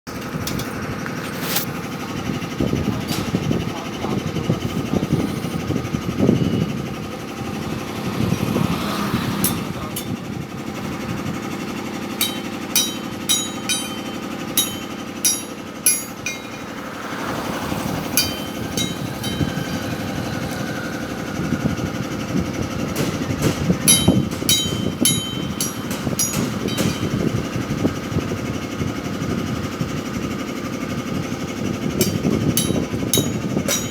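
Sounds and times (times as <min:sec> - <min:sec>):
low mechanical hum: 0:00.1 - 0:33.9
steel being struck: 0:12.2 - 0:17.1, 0:18.0 - 0:22.1, 0:23.9 - 0:27.6, 0:32.0 - 0:33.9.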